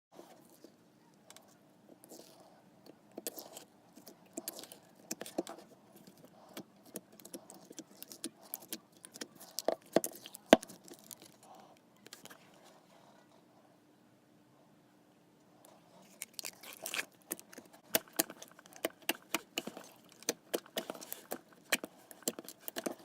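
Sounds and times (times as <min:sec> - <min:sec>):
slime clicking and popping: 0:16.3 - 0:23.0.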